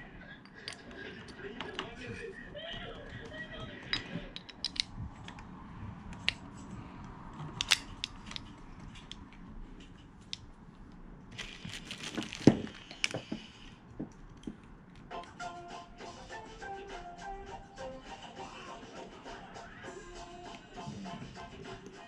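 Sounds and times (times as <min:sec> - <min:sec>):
metal tools clicking and knocking: 0:03.9 - 0:05.0, 0:07.4 - 0:10.4
rustling: 0:10.8 - 0:13.4.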